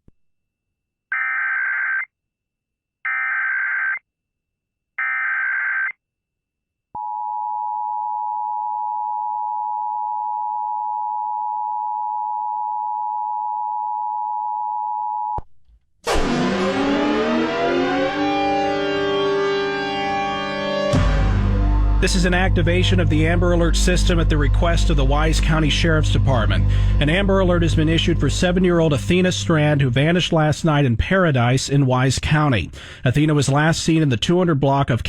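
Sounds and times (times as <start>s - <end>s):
music sting with sweeping tones: 16.1s - 30.2s.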